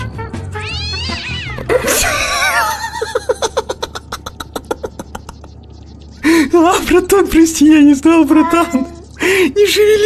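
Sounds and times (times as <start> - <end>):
background music: 0.0 - 5.0
cat meowing and yowling: 0.6 - 1.6.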